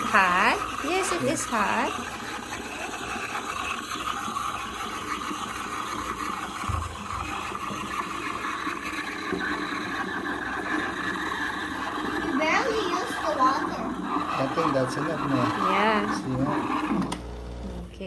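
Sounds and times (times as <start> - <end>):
espresso machine steam wand hissing: 0.0 - 17.7.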